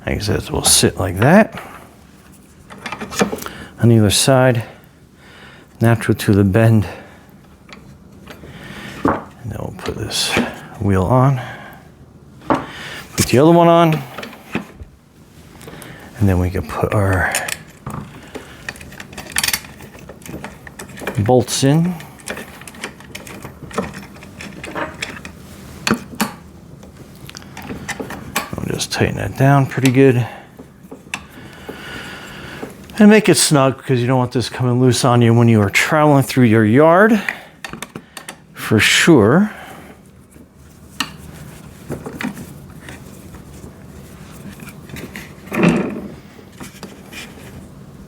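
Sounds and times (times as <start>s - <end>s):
metal tools clicking and knocking: 17.2s - 21.3s, 21.9s - 26.4s.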